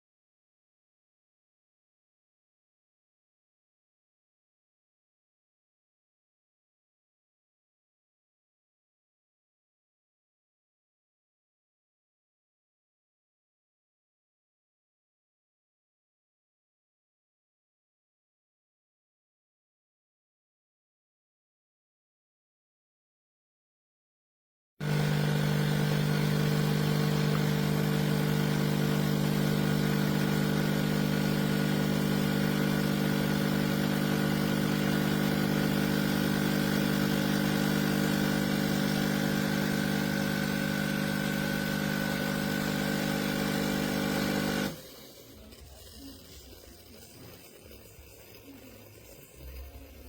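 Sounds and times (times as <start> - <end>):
espresso machine humming: 24.8 - 50.0.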